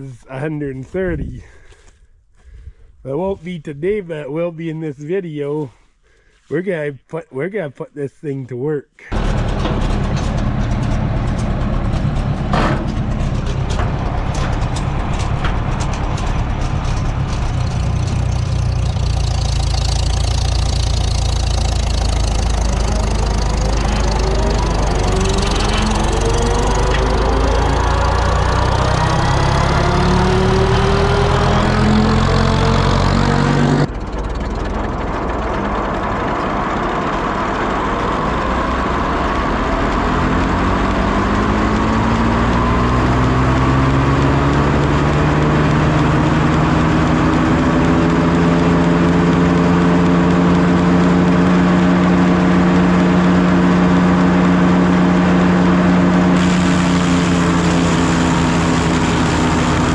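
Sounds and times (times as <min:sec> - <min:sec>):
tractor engine running: 0:09.1 - 0:59.9
wood planer: 0:18.9 - 0:33.9, 0:56.0 - 0:59.9.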